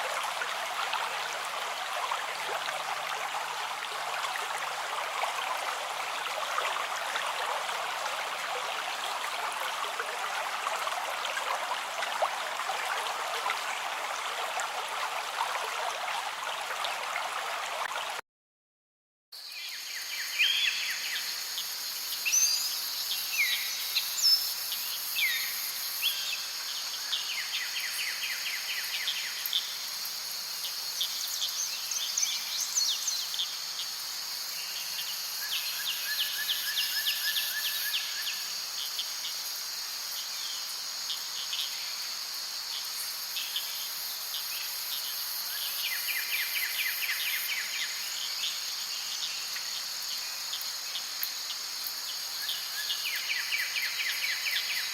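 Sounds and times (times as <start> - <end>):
insects droning: 19.4 - 54.9.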